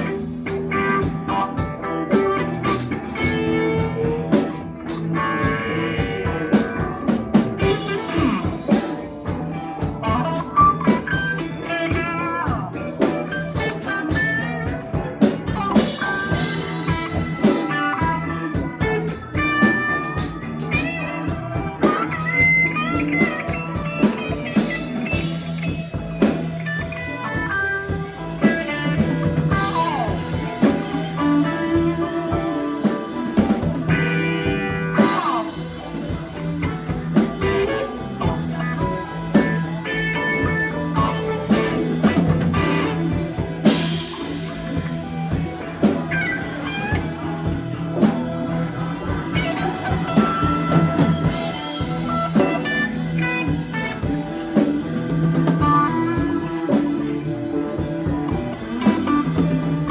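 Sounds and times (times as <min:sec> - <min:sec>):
drum kit: 0:00.0 - 0:59.9
lead guitar with string bends: 0:00.0 - 0:59.9.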